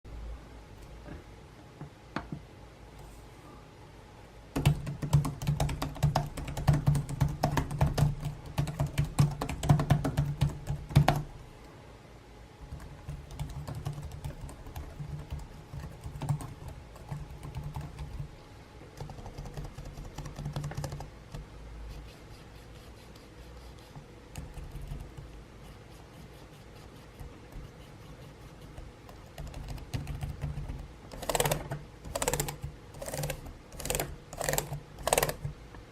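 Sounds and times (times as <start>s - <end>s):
laptop keyboard typing: 4.6s - 11.3s, 12.6s - 18.3s, 19.0s - 21.4s, 24.4s - 25.4s, 27.1s - 35.5s.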